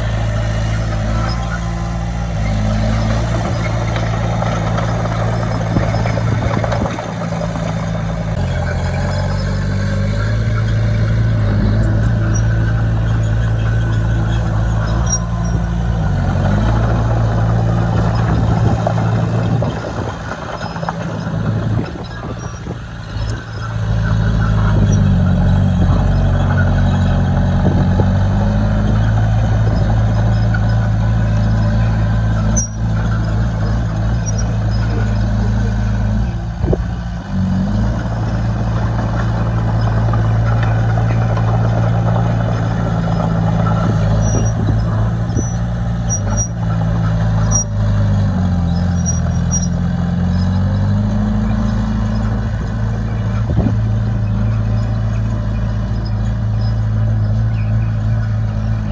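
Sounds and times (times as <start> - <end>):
heavy diesel engine under load: 0.0 - 58.9.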